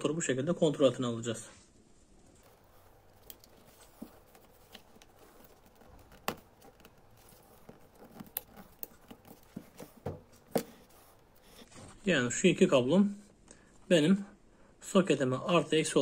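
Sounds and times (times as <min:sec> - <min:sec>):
light rustling of wires: 0:02.2 - 0:12.3.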